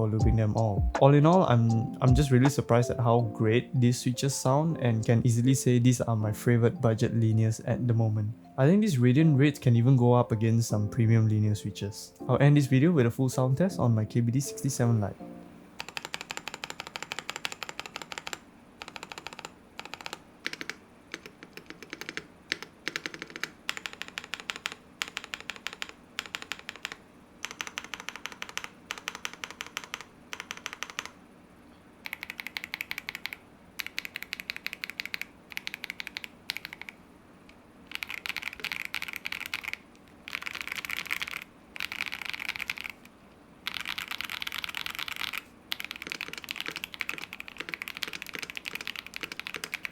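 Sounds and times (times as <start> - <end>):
mechanical keyboard typing: 15.8 - 31.2, 32.0 - 37.0, 37.9 - 49.9.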